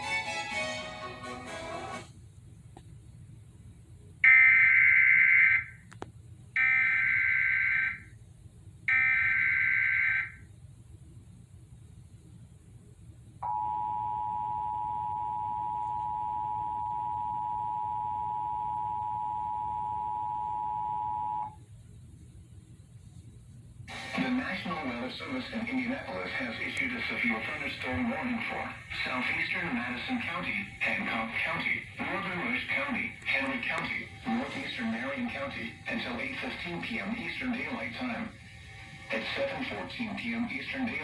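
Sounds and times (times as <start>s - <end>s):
steady attention tone: 13.4s - 21.6s, 23.9s - 41.0s.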